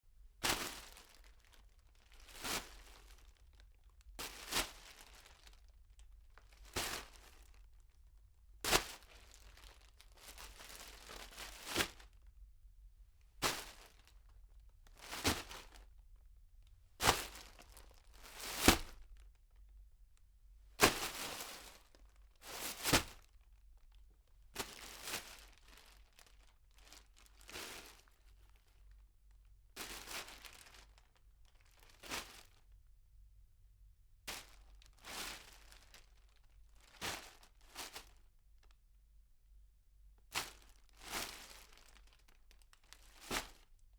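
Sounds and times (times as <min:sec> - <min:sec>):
plastic bag crinkling: 0:00.7 - 0:07.8, 0:08.9 - 0:12.1, 0:24.7 - 0:28.7, 0:29.8 - 0:32.6, 0:40.7 - 0:43.6.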